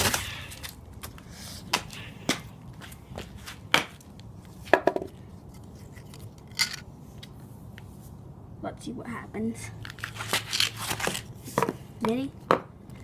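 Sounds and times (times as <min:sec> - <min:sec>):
hard objects knocking: 0:04.7 - 0:05.1.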